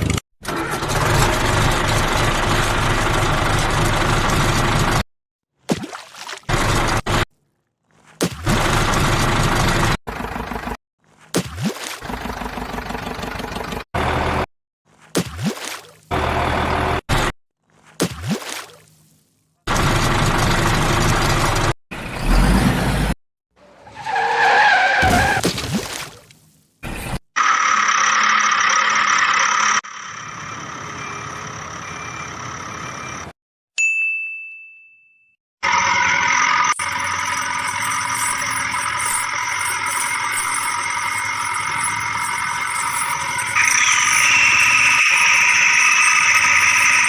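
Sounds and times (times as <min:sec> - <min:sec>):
vehicle engine running: 0:08.5 - 0:10.8, 0:27.4 - 0:32.9
vehicle engine: 0:19.7 - 0:23.8, 0:26.8 - 0:33.3, 0:35.6 - 0:47.0
wavering whine: 0:36.8 - 0:47.0.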